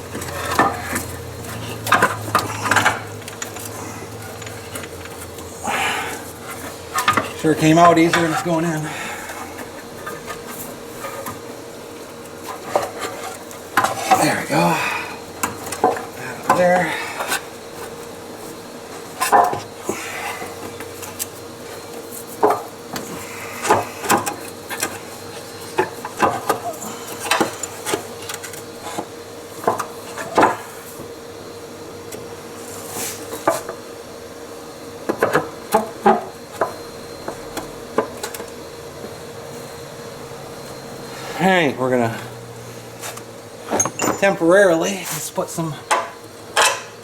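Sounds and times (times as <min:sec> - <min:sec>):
tools and parts clattering: 0:00.0 - 0:11.5, 0:12.2 - 0:14.6, 0:15.3 - 0:19.7, 0:20.3 - 0:30.6, 0:43.6 - 0:45.3, 0:45.9 - 0:47.0.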